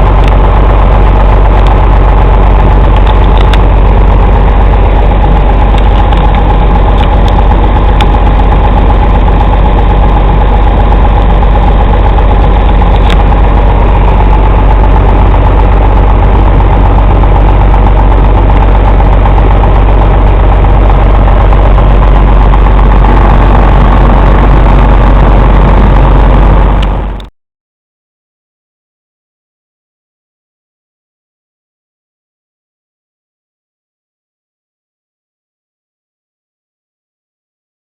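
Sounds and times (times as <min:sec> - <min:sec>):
diesel truck engine idling: 0:00.0 - 0:27.3.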